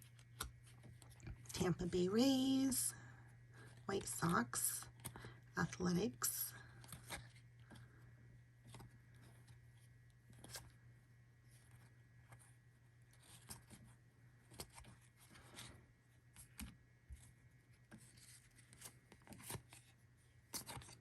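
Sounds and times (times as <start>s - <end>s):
low electrical hum: 0.0s - 21.0s
trading cards clicking and rustling: 3.6s - 8.0s, 20.5s - 21.0s.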